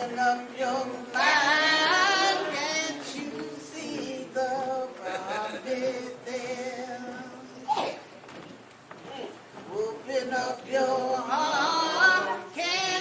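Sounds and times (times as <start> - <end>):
voices singing together: 0.0 - 7.7, 9.7 - 13.0
high voice singing with vibrato: 9.7 - 13.0.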